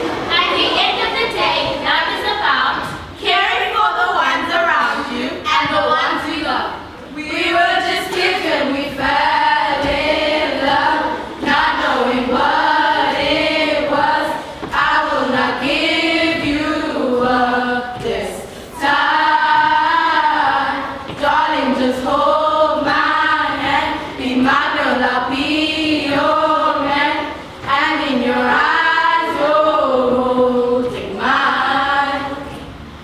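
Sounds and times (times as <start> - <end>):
choir singing slow love song: 7.1 - 33.0.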